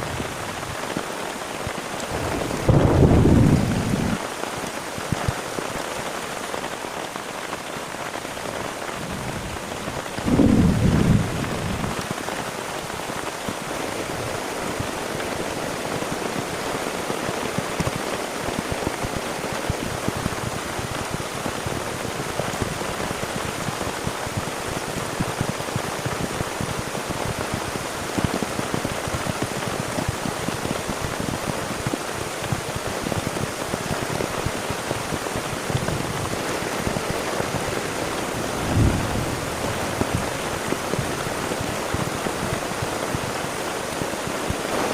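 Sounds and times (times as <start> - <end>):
heavy rain falling: 0.0 - 44.9
low rumble of thunder: 2.1 - 4.4, 9.0 - 12.3, 38.3 - 42.5.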